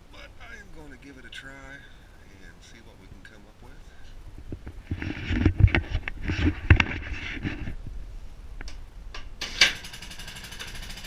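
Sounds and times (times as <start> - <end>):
two-stroke engine firing irregularly: 9.5 - 11.0.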